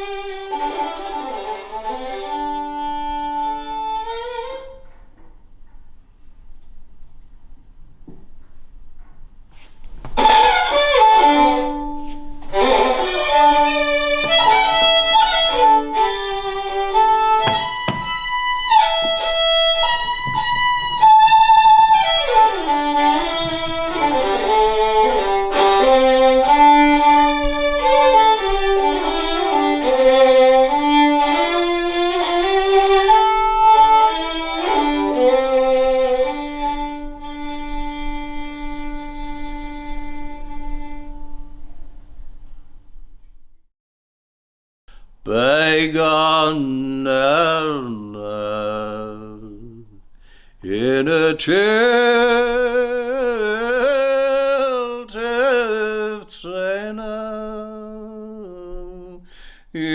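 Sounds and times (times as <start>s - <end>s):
fiddle melody: 0.0s - 4.9s, 10.0s - 41.9s.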